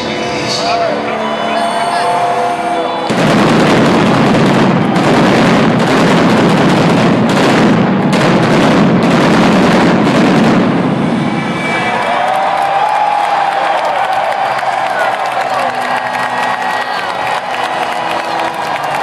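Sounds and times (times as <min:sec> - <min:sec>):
pyrotechnics bangs and crackles: 0:03.1 - 0:11.8.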